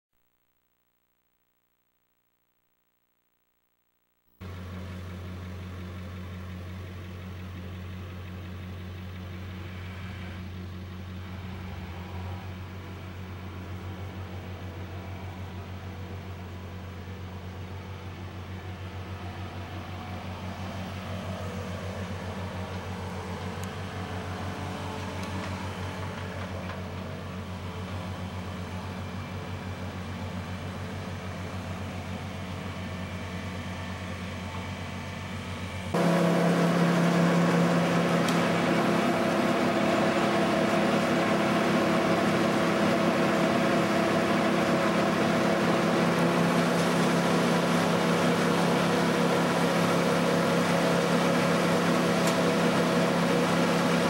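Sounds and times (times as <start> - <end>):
low machinery engine running: 4.4 - 54.0
higher-pitched engine sound: 35.4 - 54.0.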